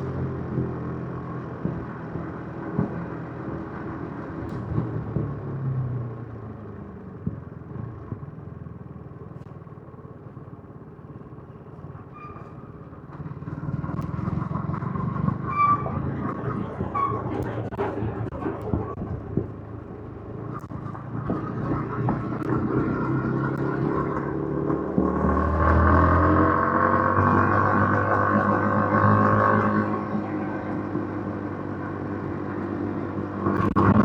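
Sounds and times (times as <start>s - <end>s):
motorcycle engine: 0.0s - 34.0s.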